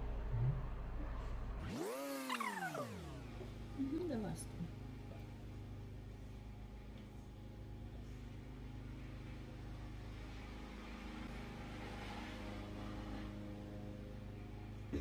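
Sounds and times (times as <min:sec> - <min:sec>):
kitchen appliance humming: 0:01.7 - 0:13.2.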